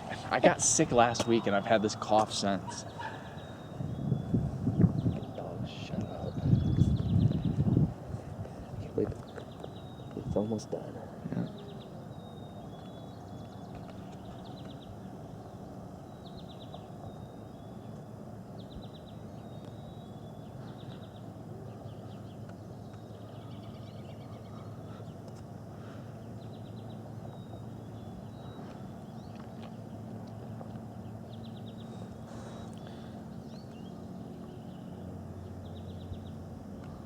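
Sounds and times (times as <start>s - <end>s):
songbird high trill: 0.0s - 7.9s, 9.0s - 25.2s
steady low drone: 0.0s - 37.0s.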